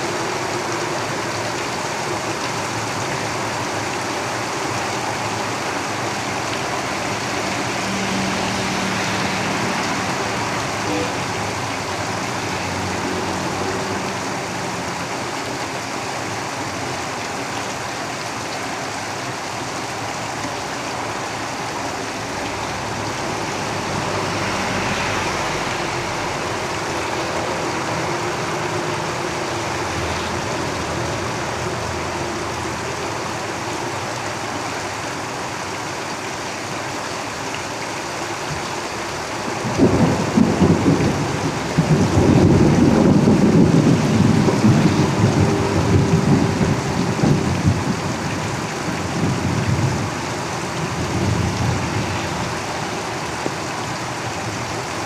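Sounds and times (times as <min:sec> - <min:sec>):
heavy rain on a tin roof: 0:00.0 - 0:55.0
loud deep rumble: 0:39.6 - 0:50.2.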